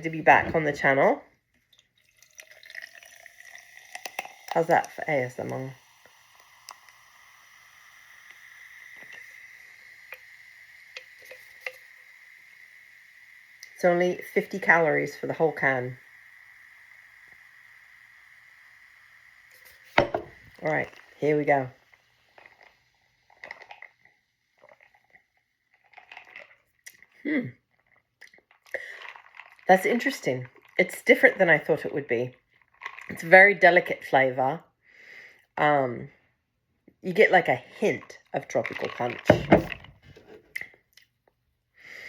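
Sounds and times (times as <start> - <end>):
soda fizzing: 0.0 - 34.0, 37.1 - 40.7
slurping from a can: 22.0 - 30.8.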